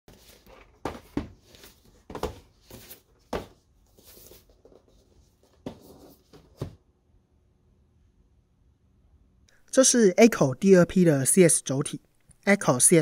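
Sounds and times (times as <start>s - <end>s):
rustling and scraping: 0.1s - 6.8s.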